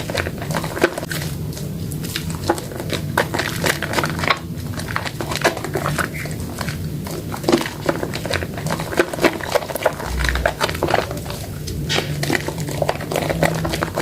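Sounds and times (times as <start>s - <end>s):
wet soap squelching: 0.0s - 14.0s.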